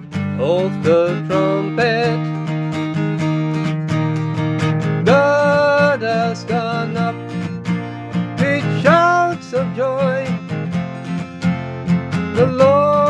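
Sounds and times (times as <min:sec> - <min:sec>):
acoustic guitar strumming: 0:00.0 - 0:13.0
person singing: 0:00.3 - 0:02.5, 0:05.0 - 0:11.1, 0:12.2 - 0:13.0.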